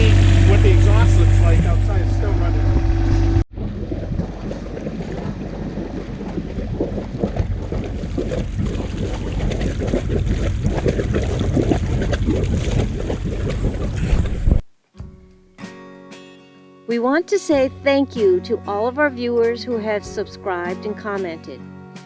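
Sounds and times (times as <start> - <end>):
wet exhaust splashing and sputtering: 0.0 - 14.4
wind on microphone: 0.0 - 14.7.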